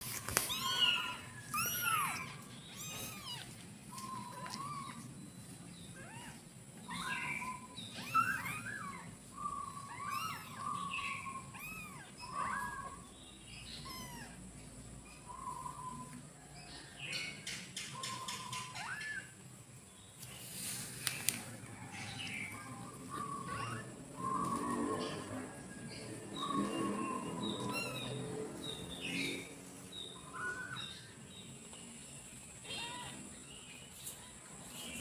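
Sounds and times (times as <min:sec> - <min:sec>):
kittens meowing: 0:00.4 - 0:05.1, 0:05.9 - 0:13.0, 0:13.6 - 0:14.6, 0:18.4 - 0:19.4, 0:21.9 - 0:24.6, 0:26.4 - 0:28.3, 0:32.6 - 0:33.3.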